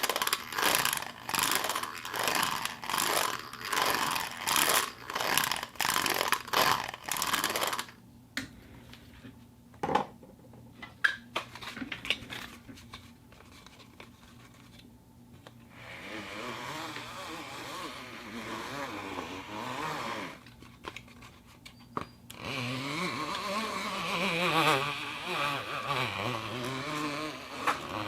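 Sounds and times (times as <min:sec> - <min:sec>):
plastic cup crackling: 0:00.0 - 0:08.0.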